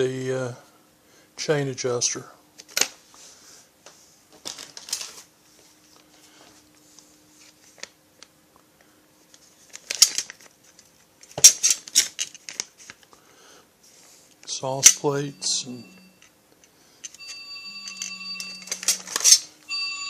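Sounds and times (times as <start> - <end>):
packaging crinkling and rustling: 4.3 - 5.3, 9.3 - 13.1, 18.6 - 19.5.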